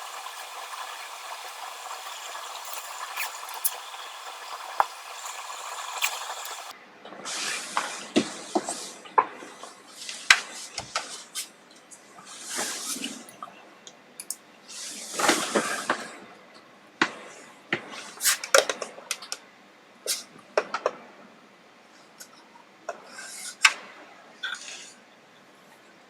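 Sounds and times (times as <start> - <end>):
short hissing blasts: 0.0 - 6.7.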